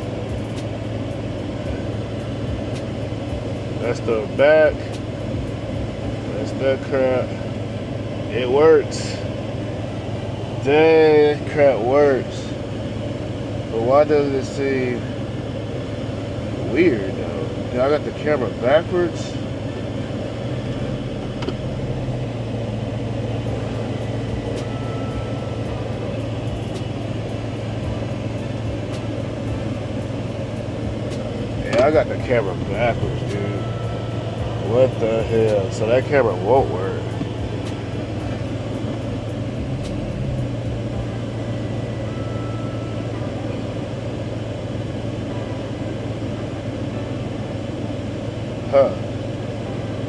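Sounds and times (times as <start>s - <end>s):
pickup truck idling: 0.0s - 50.0s
short beep: 24.4s - 25.9s, 33.2s - 34.7s, 41.6s - 43.3s.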